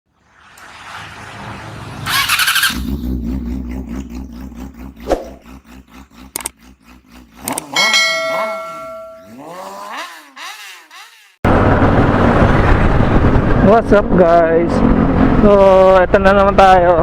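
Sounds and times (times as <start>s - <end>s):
motorcycle engine starting and idling: 0.5s - 10.4s
ringing tones with pitch glides: 2.7s - 9.6s.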